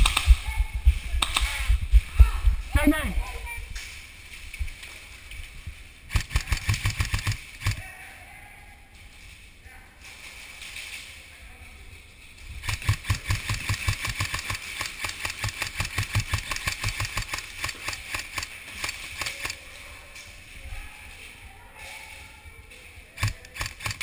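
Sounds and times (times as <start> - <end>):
airsoft gun rapid fire: 0.0 - 0.5, 6.1 - 7.8, 12.6 - 19.6, 23.2 - 24.0.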